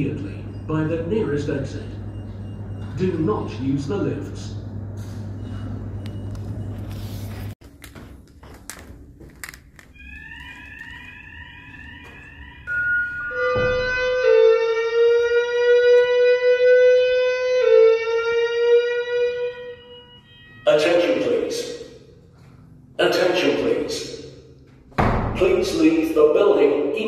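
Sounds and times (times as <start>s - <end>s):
held alarm tone: 0.0s - 4.6s, 10.0s - 22.3s
short rising alarm tones: 10.0s - 21.9s.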